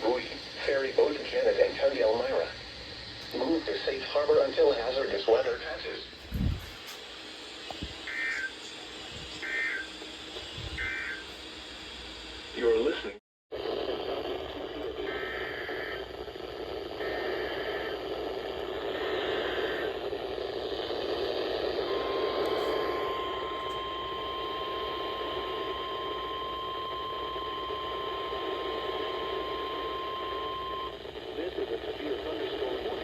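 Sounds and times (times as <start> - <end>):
steady warning alarm tone: 0.0 - 13.1, 21.1 - 31.1
radio reception hiss: 0.0 - 33.0
data bursts: 7.7 - 11.5, 21.8 - 31.0.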